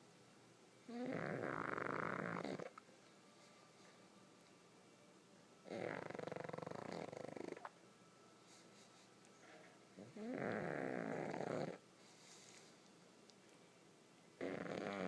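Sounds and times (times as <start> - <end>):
dog snoring: 0.8 - 2.8, 5.6 - 7.7, 10.0 - 12.8, 14.4 - 15.0.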